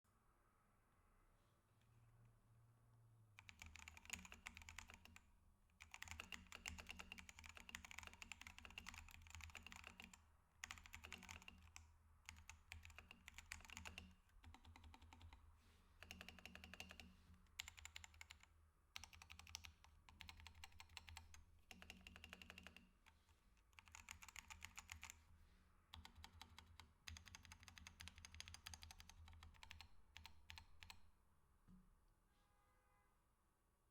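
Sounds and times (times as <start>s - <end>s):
mechanical keyboard typing: 3.4s - 5.2s, 5.8s - 15.4s, 16.0s - 22.8s, 23.8s - 25.2s, 25.9s - 31.0s.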